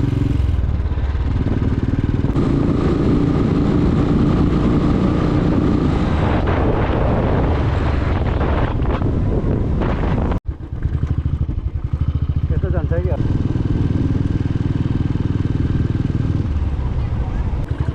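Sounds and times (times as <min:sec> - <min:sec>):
vehicle engine running: 0:00.0 - 0:06.6, 0:07.2 - 0:17.9
road noise: 0:00.0 - 0:17.9.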